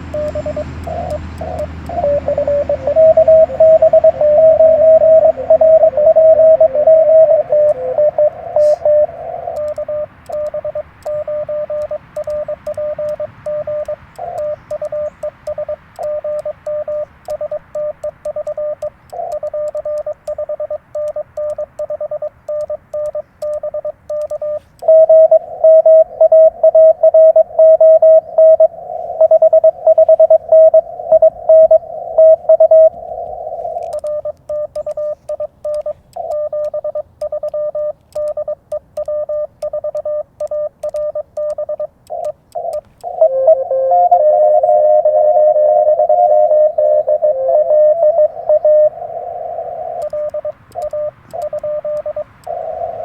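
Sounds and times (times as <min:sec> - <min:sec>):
morse code beeps: 0:00.0 - 0:53.0.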